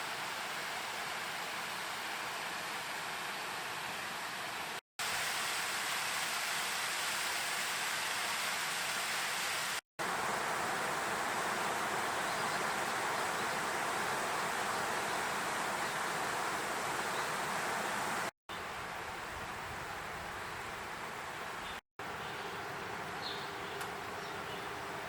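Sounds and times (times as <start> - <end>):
river water rushing: 0.0 - 19.4.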